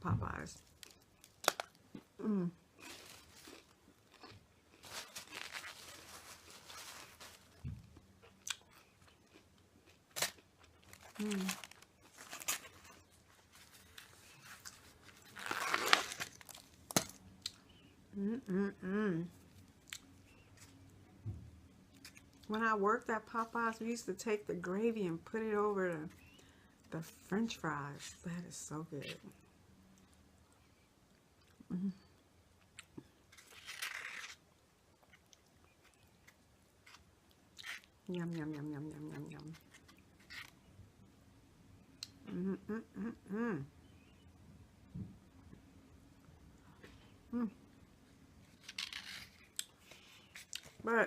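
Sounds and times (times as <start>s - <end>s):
person humming: 2.2s - 2.6s, 18.1s - 19.3s, 31.7s - 32.1s, 42.3s - 43.7s, 47.3s - 47.6s.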